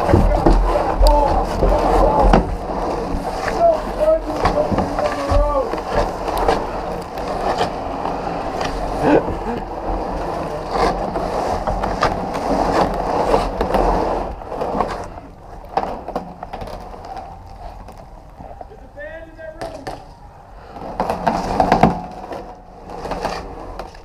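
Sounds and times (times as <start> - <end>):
knocks and clatters: 0.0 - 7.7
hollow tube rolling over ground: 0.0 - 24.0.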